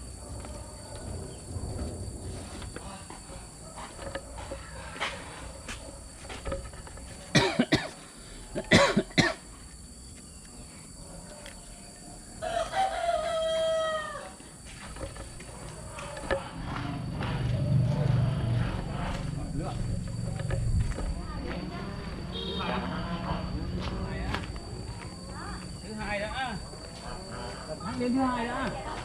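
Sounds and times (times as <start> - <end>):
rooster crowing: 3.2 - 6.0, 12.2 - 14.6, 22.0 - 24.0.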